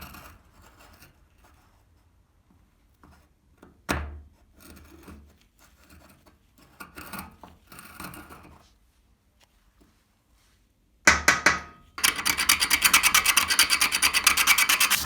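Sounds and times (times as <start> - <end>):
parts scraping and shuffling: 14.4 - 15.0.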